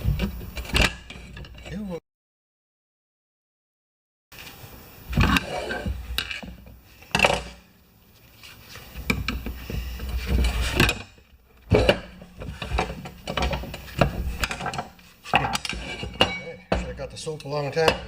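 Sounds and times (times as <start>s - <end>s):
tools clunking on tire rim: 8.9s - 17.1s.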